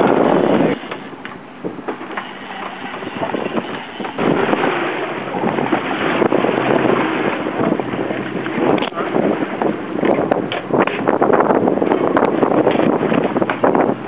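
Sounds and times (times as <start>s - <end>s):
boat running at sea: 0.0s - 14.0s
wind buffeting microphone: 0.0s - 14.0s.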